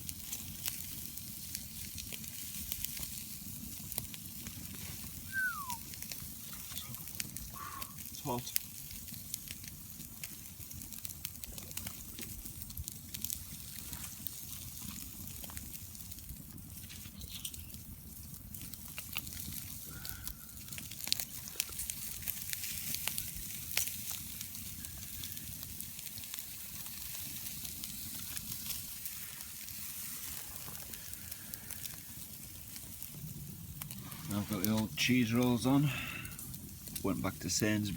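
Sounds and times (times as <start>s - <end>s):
food sizzling in a pan: 4.6s - 5.8s.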